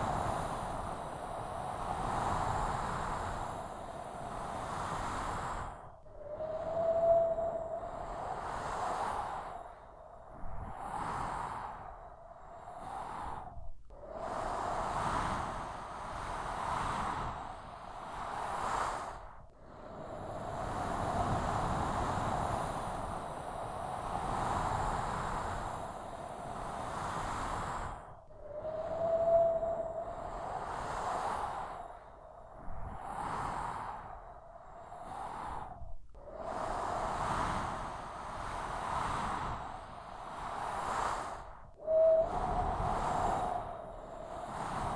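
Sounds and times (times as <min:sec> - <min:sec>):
strong wind gusting: 0:00.0 - 0:09.7, 0:20.0 - 0:31.8, 0:36.5 - 0:44.9
blowing sand hiss: 0:36.8 - 0:44.9.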